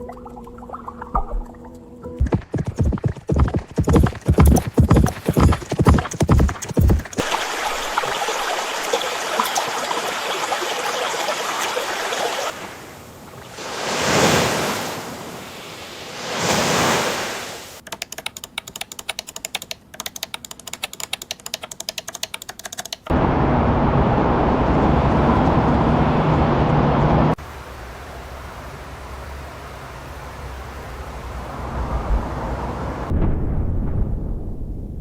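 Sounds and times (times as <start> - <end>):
rapid patter of sharp clicks: 1.2 - 8.3, 17.8 - 23.1.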